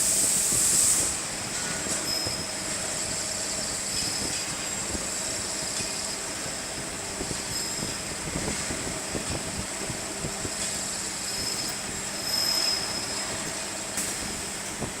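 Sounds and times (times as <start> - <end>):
drilling machine spindles whining: 10.7 - 13.5.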